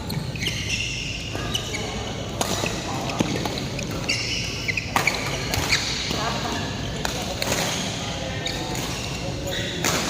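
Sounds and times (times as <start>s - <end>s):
shoes squeaking on court floor: 0.0s - 10.0s
sports hall noise: 0.0s - 10.0s
rackets striking shuttlecock: 2.3s - 6.3s, 6.9s - 7.9s, 8.6s - 10.0s.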